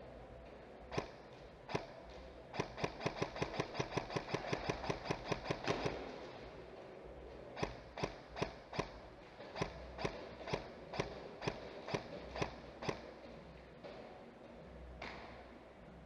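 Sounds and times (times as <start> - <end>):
sharp clicks: 0.9 - 1.9, 2.5 - 5.9, 7.6 - 9.0, 9.6 - 13.0
airsoft gun shots: 2.5 - 6.1, 7.6 - 9.0.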